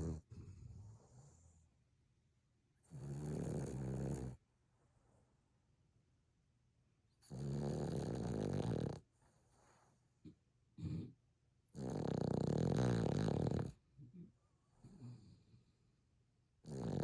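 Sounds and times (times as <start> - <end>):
dog snoring: 0.0 - 1.6, 2.8 - 4.4, 7.2 - 9.8, 10.8 - 13.8, 14.8 - 15.7, 16.6 - 17.0
dog snorting: 7.3 - 9.0, 11.8 - 13.8, 16.6 - 17.0.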